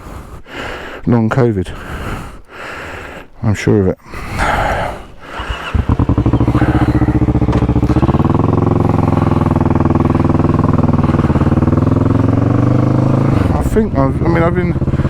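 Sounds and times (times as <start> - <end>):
motorcycle engine revving: 5.3 - 15.0.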